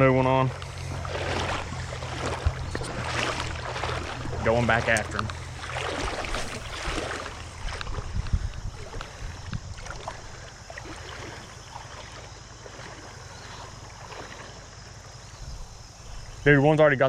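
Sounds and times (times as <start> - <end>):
wind rumble on microphone: 0.0 - 11.6, 15.3 - 16.5
creek water flowing: 0.0 - 16.8.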